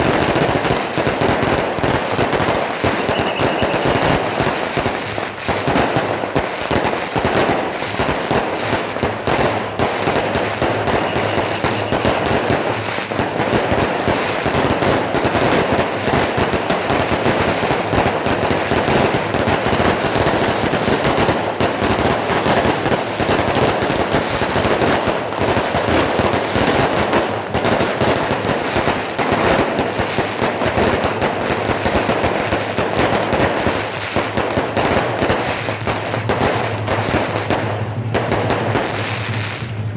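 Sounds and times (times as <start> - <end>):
firecrackers crackling: 0.0 - 39.9.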